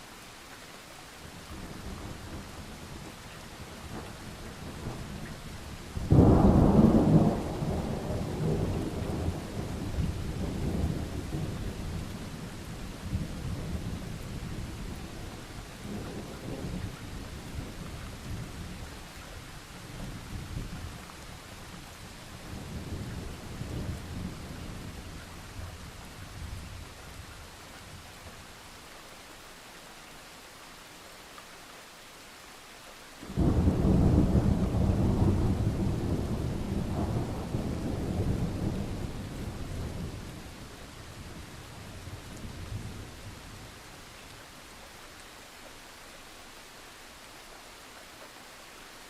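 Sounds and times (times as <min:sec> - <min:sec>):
steady rain: 0:00.0 - 0:49.0
thunderclap and rolling rumble: 0:01.5 - 0:18.9, 0:19.8 - 0:27.4, 0:33.3 - 0:43.7.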